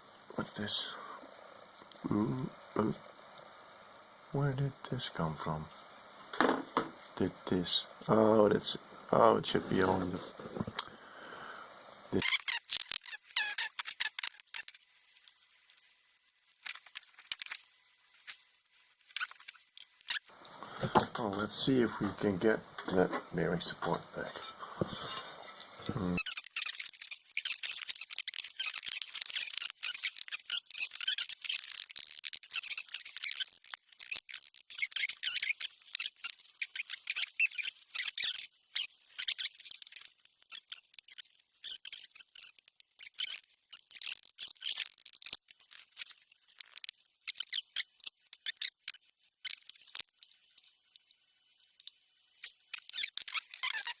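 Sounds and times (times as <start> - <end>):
tools scratching small metal parts: 12.2 - 20.3, 24.2 - 51.1, 51.7 - 54.0.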